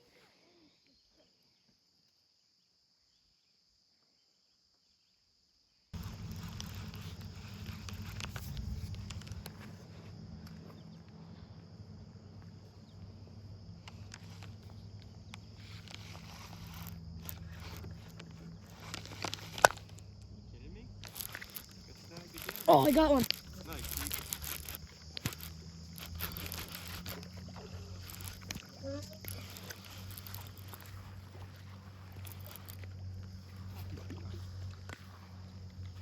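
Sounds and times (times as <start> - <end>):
faint clicks and rustles: 6.0 - 36.0
high insect buzz: 6.0 - 36.0
low rumble: 19.8 - 21.9.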